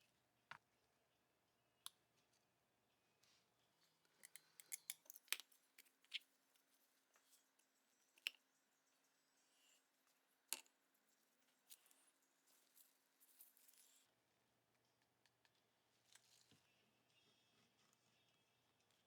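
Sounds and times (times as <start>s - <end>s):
faint sharp clicks and snips: 4.0s - 8.5s.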